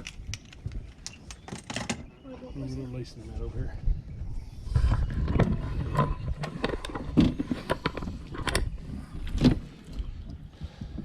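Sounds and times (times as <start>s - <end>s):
fishing gear clicking and rattling: 0.0s - 2.1s, 5.2s - 10.5s.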